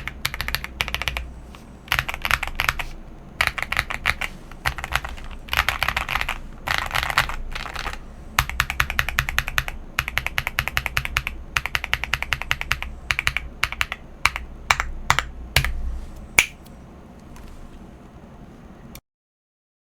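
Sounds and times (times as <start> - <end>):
mechanical keyboard typing: 0.0 - 1.3, 1.9 - 15.8.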